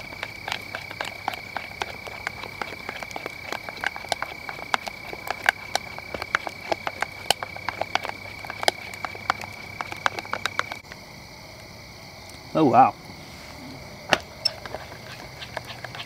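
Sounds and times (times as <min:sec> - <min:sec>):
wood fire crackling: 0:00.0 - 0:10.9.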